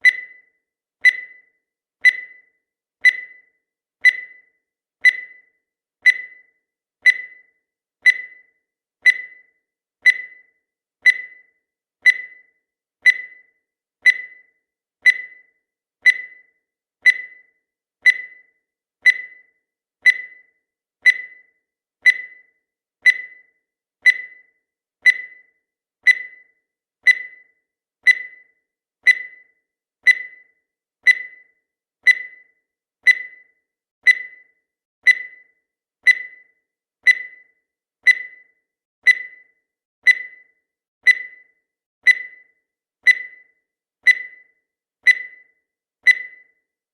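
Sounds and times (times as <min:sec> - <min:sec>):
short high timer beeps: 0:00.0 - 0:00.4, 0:06.1 - 0:06.5, 0:07.1 - 0:07.5, 0:08.1 - 0:08.5, 0:09.1 - 0:09.5, 0:28.1 - 0:28.5, 0:29.1 - 0:29.5, 0:30.1 - 0:30.5, 0:31.1 - 0:31.5, 0:32.1 - 0:32.5, 0:33.1 - 0:33.5, 0:34.1 - 0:34.5, 0:35.1 - 0:35.5, 0:36.1 - 0:36.5, 0:37.1 - 0:39.5, 0:40.1 - 0:40.5, 0:41.1 - 0:41.5, 0:42.1 - 0:43.5, 0:44.1 - 0:46.6.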